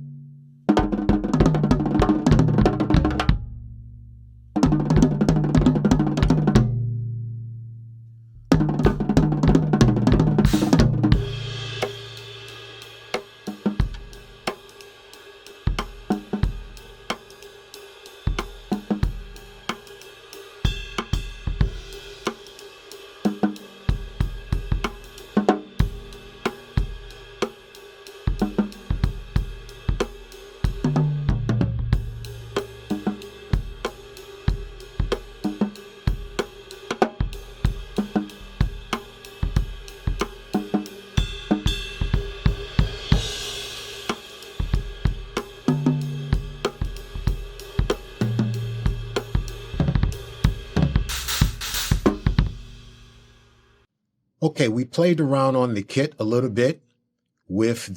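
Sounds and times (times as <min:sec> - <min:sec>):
drum kit groove: 0:00.7 - 0:03.6, 0:04.5 - 0:06.8, 0:08.4 - 0:53.8
heavy drum accent ringing: 0:09.0 - 0:14.5, 0:28.3 - 0:53.3.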